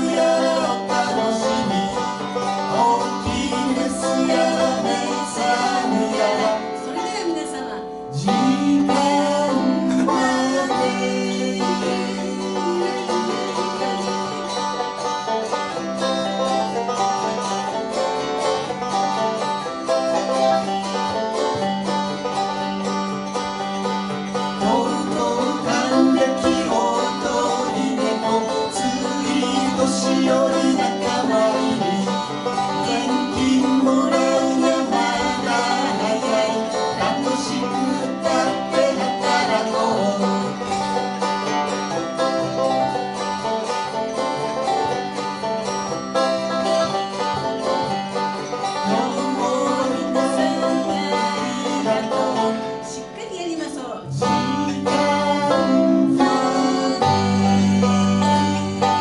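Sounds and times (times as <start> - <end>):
plucked string instrumental music: 0.0 - 59.0.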